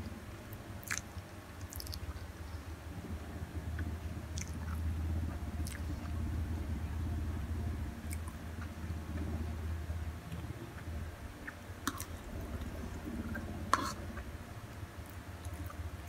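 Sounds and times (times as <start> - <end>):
low hum: 0.0 - 16.0
person chewing noodles: 0.8 - 2.2.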